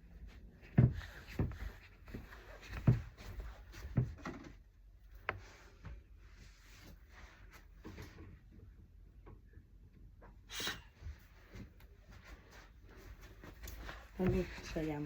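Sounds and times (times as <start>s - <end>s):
dull thumps and knocks: 0.6s - 4.6s, 13.9s - 15.0s.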